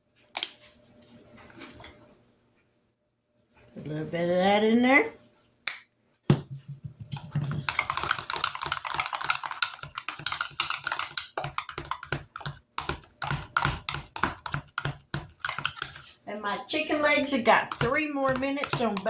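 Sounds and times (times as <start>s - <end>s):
utensil mashing potatoes in pot: 7.1s - 19.0s.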